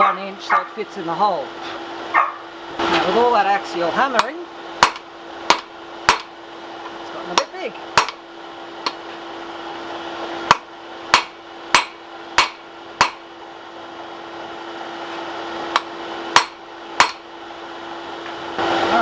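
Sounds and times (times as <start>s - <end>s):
steady hum: 0.0s - 19.0s
hammer striking hot steel: 4.1s - 8.2s, 8.8s - 9.1s, 10.4s - 13.3s, 15.7s - 17.3s.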